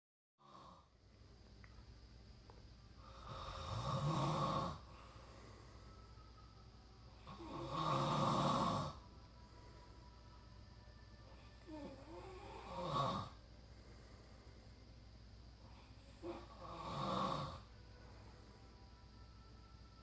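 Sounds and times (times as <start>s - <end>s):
faint low hum: 0.4s - 20.0s
person snoring heavily: 3.0s - 5.9s, 7.3s - 9.1s, 11.7s - 13.4s, 15.7s - 17.7s.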